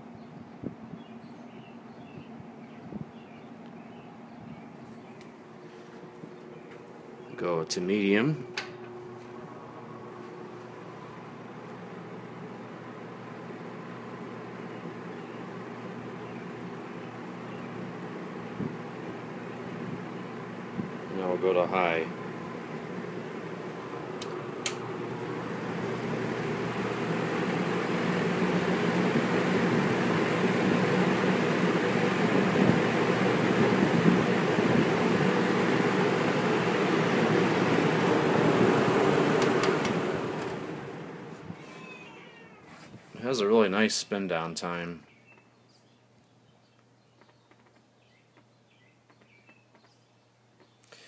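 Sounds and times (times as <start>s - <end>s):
steady low hum: 0.0s - 41.6s
box fan blowing air: 0.0s - 45.1s
fan switch clicks: 8.4s - 9.3s, 24.1s - 24.9s, 39.3s - 40.7s.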